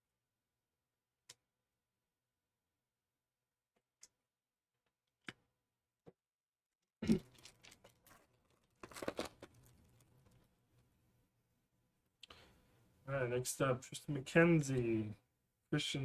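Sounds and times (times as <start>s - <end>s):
cards being handled: 7.3s - 10.0s
foil wrapper crinkling and tearing: 7.3s - 10.0s.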